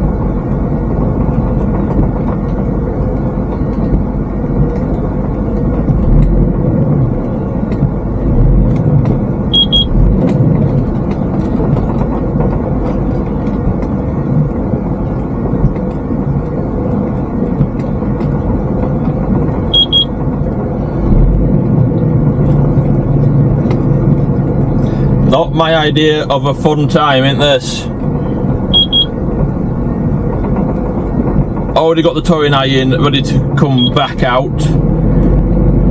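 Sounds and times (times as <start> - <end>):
diesel truck engine running: 0.0 - 35.9
truck rattling over rough ground: 0.0 - 35.9
short high beeps: 9.5 - 9.9, 19.8 - 20.2, 28.7 - 29.1.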